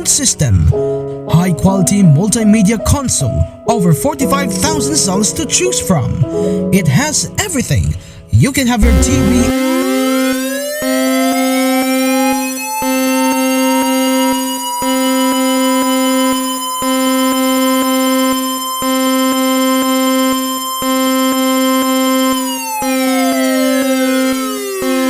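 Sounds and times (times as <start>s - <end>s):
low buzzing tone: 8.8s - 9.6s
synthesized alert siren glide: 8.8s - 9.6s.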